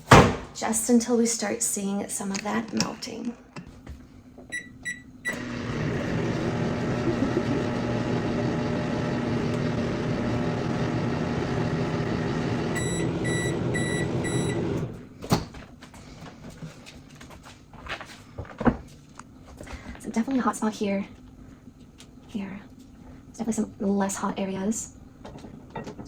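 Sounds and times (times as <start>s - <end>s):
microwave oven humming: 4.4s - 15.2s
short high beeps: 12.8s - 14.6s.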